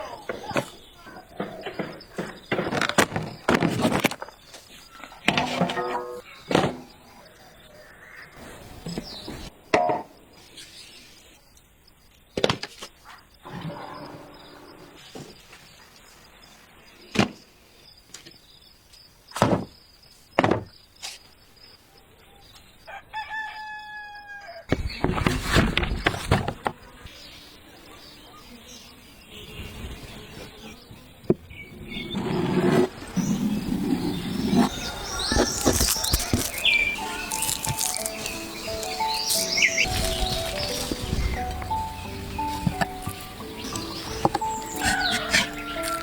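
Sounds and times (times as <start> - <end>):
rooster crowing: 22.9 - 24.7, 43.4 - 46.0.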